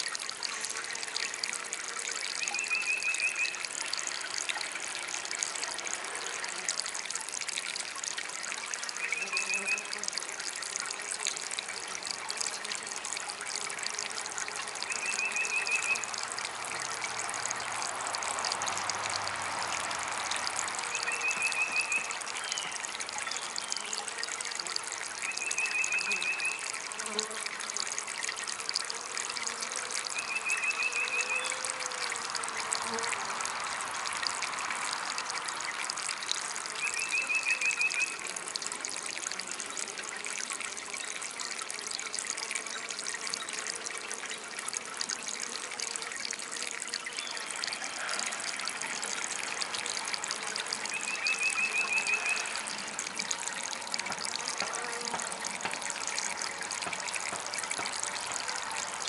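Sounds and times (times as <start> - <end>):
water fountain trickling: 0.0 - 59.0.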